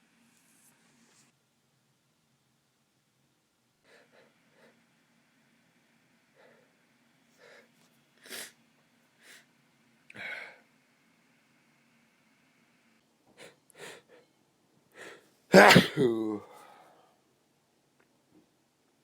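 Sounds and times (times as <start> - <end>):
man sniffling and gasping: 13.4 - 14.3, 15.0 - 17.0.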